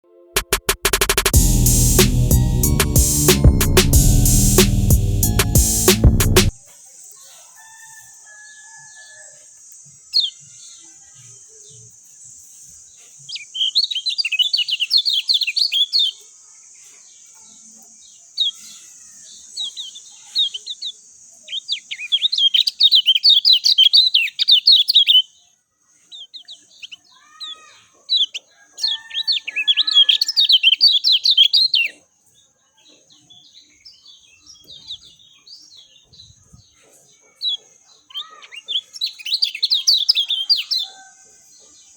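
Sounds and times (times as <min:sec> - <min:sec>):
steady high hiss: 0:00.4 - 0:06.5.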